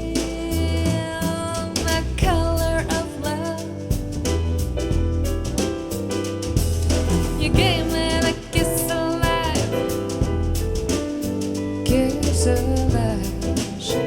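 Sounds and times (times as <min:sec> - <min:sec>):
soul jazz band: 0:00.0 - 0:14.0
person singing: 0:07.1 - 0:09.8.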